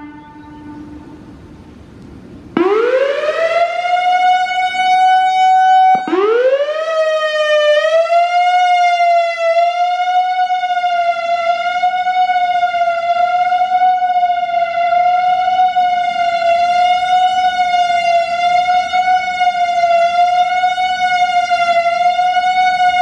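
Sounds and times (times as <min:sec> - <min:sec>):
electronic warning siren: 0:00.0 - 0:01.5, 0:02.6 - 0:23.0.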